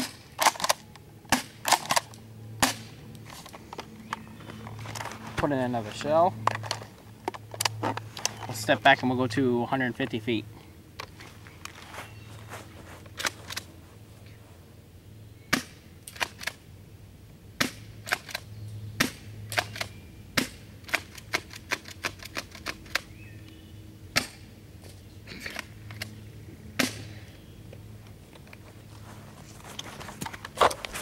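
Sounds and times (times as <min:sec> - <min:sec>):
airsoft shotgun racking and firing: 0:00.0 - 0:05.5, 0:13.2 - 0:13.7, 0:19.1 - 0:23.1.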